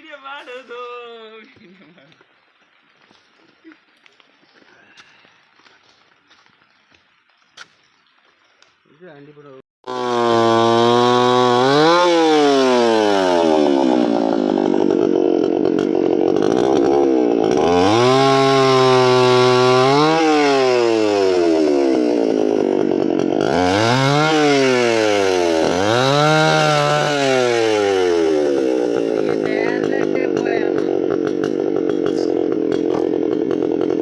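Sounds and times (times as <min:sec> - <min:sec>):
chainsaw cutting wood: 0:09.8 - 0:34.0.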